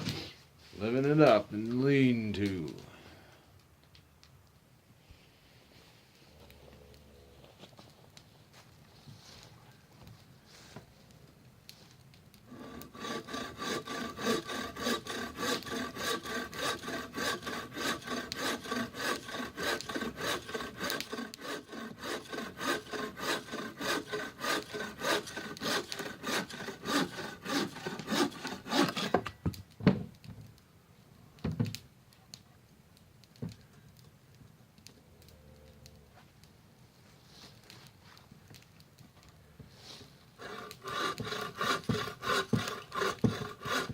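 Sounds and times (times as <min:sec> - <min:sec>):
hand saw cutting wood: 0:12.5 - 0:29.3, 0:40.4 - 0:43.9.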